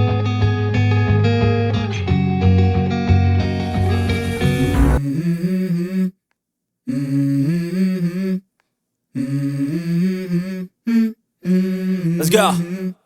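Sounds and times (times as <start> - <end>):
hummed vocal melody: 3.7 - 6.2, 6.9 - 8.5, 9.1 - 13.0.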